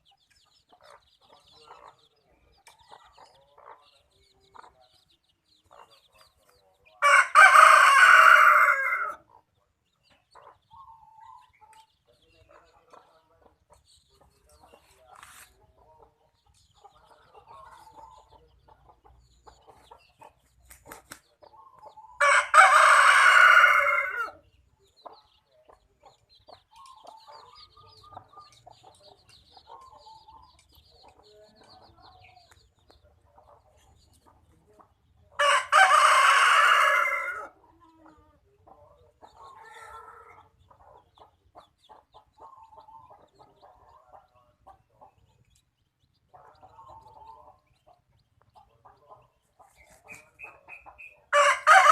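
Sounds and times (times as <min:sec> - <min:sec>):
chickens clucking softly: 0:00.0 - 0:07.2, 0:07.8 - 0:22.4, 0:23.3 - 0:51.9
rooster crowing: 0:07.0 - 0:09.2, 0:22.2 - 0:24.4, 0:35.4 - 0:37.5, 0:51.3 - 0:51.9.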